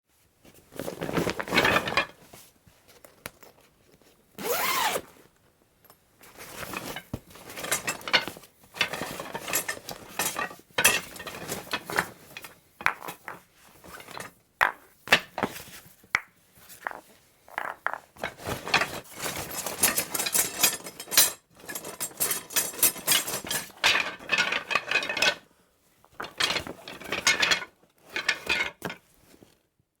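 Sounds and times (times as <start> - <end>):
bag rustling: 0.7 - 1.9.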